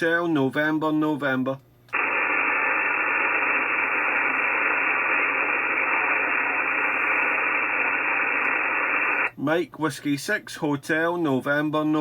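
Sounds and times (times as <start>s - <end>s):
muffled radio hiss: 1.9s - 9.6s.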